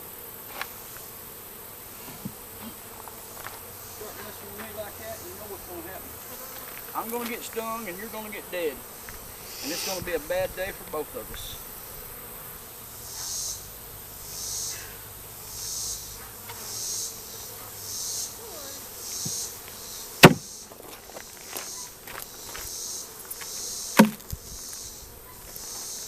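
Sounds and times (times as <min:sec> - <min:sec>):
bee swarm humming: 0:00.0 - 0:26.0
insects calling in hissing pulses: 0:00.0 - 0:26.0
sharp knocks: 0:20.2 - 0:20.5, 0:24.0 - 0:24.3.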